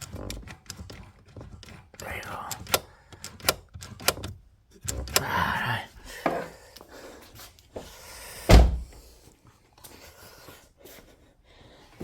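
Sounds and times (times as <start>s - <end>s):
heavy slam: 8.5s - 8.9s.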